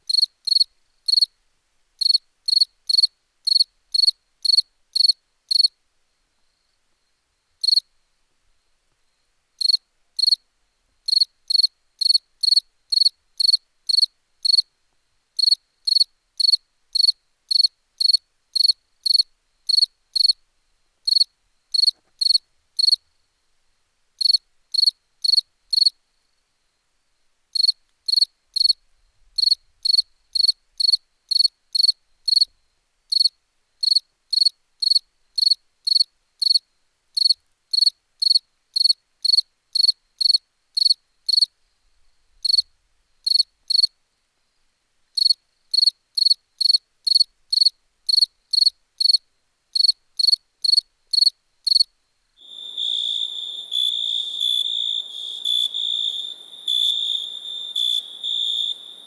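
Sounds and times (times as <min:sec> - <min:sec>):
cricket chirping: 0:49.8 - 0:59.0
cricket trill: 0:49.8 - 0:59.0.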